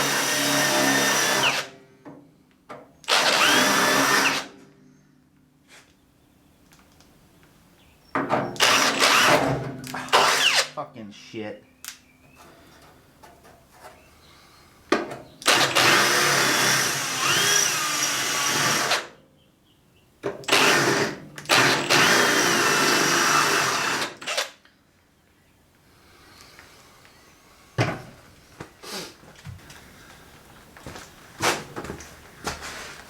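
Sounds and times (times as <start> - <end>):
drill boring into metal: 0.0 - 1.7, 3.1 - 4.5, 8.6 - 9.4, 15.4 - 19.0, 20.5 - 24.5.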